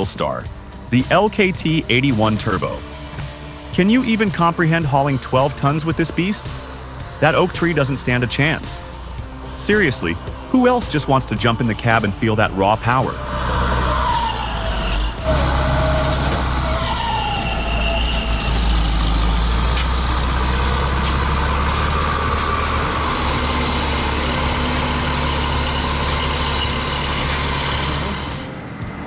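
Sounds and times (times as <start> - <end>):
heavy diesel engine running: 0.0 - 29.0
whining tones gliding downward: 2.1 - 29.0.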